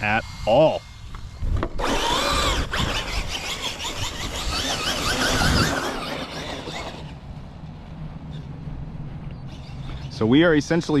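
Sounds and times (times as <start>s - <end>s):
electric motor whining: 0.0s - 7.2s
tyre and dirt noise: 0.0s - 11.0s.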